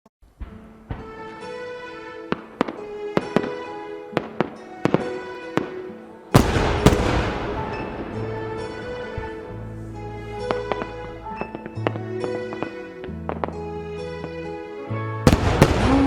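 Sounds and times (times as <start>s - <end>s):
soft music: 0.2s - 16.0s
firework bangs and pops: 0.4s - 1.7s, 2.3s - 9.5s, 10.4s - 14.4s, 15.3s - 16.0s
loud firework burst with crackle: 6.4s - 9.4s, 15.3s - 16.0s.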